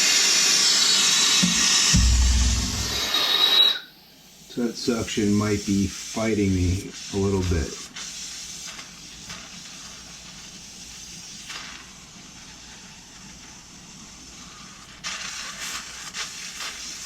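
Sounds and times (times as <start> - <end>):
hot metal sizzling: 0.0 - 13.1
torch flame hissing: 0.0 - 17.0.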